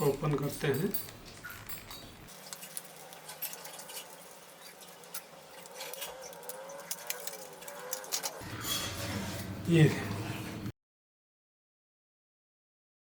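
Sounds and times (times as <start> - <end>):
packaging clicks and crinkles: 0.0 - 8.4.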